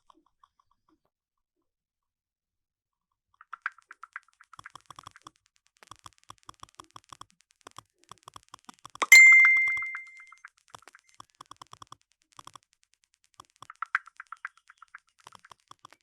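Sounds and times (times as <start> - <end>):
phone message alert chime: 9.0 - 10.2.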